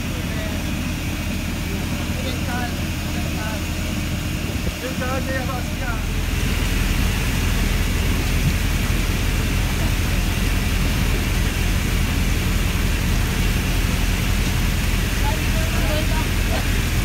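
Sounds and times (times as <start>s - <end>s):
boat engine idling: 0.0s - 17.0s.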